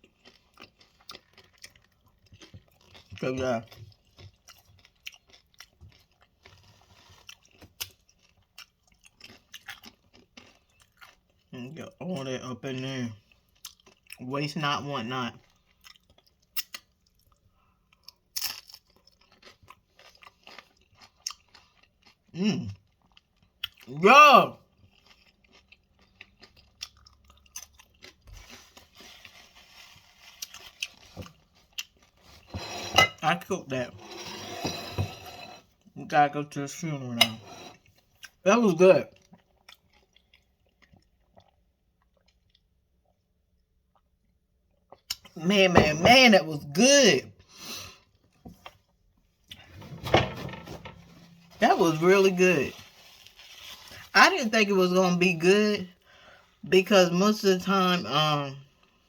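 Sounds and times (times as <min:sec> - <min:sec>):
chewing and crunching chips: 0:00.0 - 0:32.5, 0:35.6 - 0:45.7, 0:50.9 - 0:59.0
person crunching chips: 0:24.7 - 0:32.2, 0:51.0 - 0:56.4.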